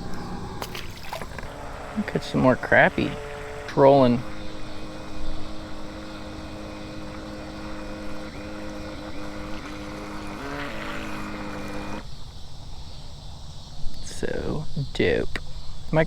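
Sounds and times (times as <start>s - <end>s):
electric motor whining: 0.0s - 12.1s.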